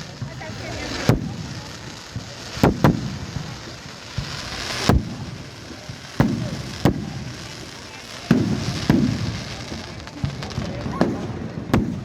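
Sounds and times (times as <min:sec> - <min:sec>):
firework bangs: 0:00.0 - 0:12.0
hissing crackling fireworks: 0:00.0 - 0:12.0.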